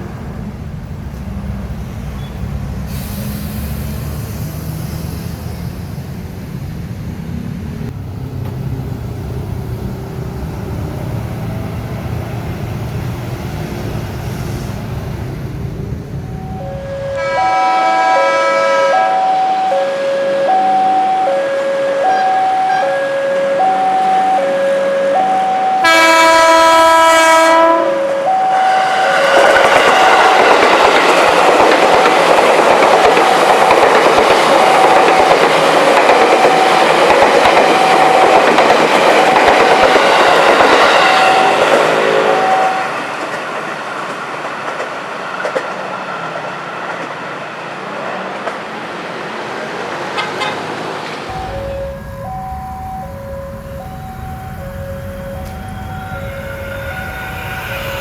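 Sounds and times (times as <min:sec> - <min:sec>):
train rumbling and wheel clatter: 0:00.0 - 0:19.7, 0:22.1 - 0:58.0
two-tone crossing alarm: 0:16.2 - 0:43.1, 0:51.3 - 0:58.0
train horn: 0:16.3 - 0:30.8, 0:39.8 - 0:43.0, 0:51.3 - 0:58.0.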